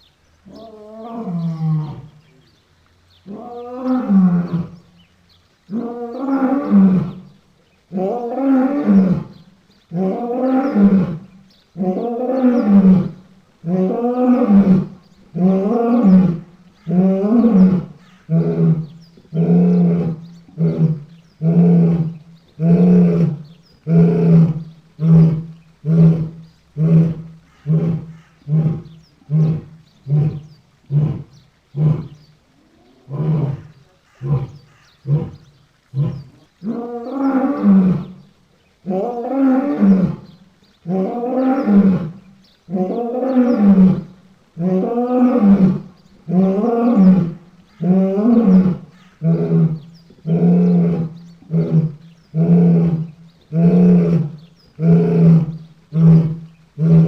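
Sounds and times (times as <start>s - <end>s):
lion roaring: 9.9s - 38.2s, 40.9s - 57.0s.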